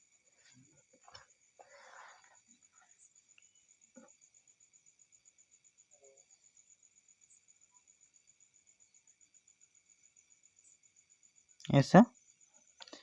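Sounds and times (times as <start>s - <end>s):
faint high pulsing chirp: 0.0s - 13.0s.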